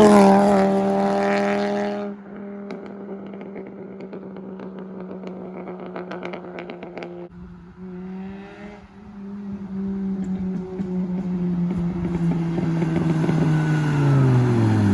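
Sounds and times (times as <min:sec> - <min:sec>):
engine drone: 0:00.0 - 0:14.9
exhaust popping and crackling: 0:02.2 - 0:07.4, 0:09.6 - 0:14.9.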